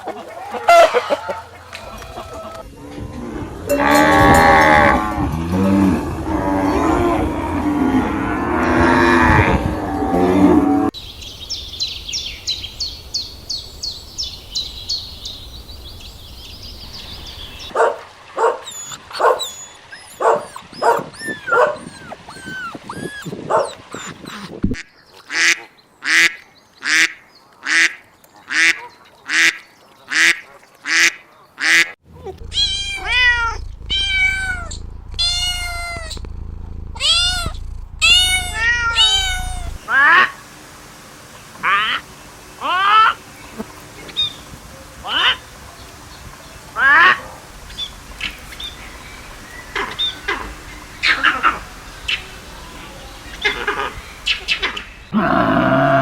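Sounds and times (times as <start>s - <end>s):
animal calls: 17.2s - 26.2s, 30.9s - 40.4s, 46.7s - 56.0s.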